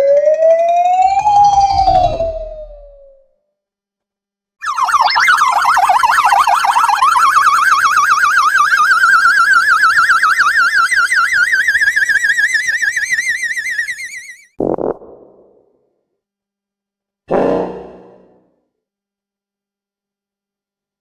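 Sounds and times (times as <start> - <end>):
warbling whistle-like tone: 0.0 - 3.3, 4.6 - 14.6.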